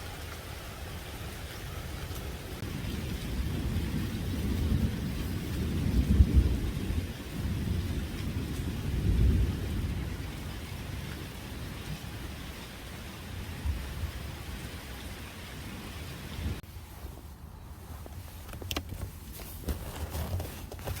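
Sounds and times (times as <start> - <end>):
steady rain: 0.0 - 17.0.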